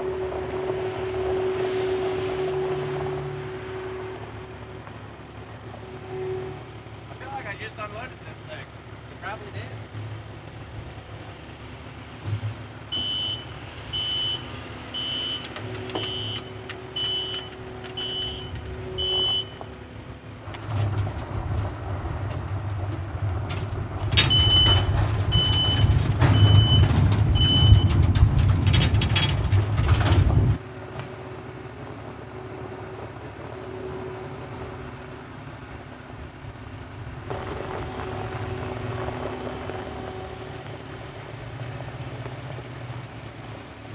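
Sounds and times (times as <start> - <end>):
loading machine engine: 0.0 - 43.9
back-up alarm beeping: 12.9 - 19.6, 24.2 - 28.0.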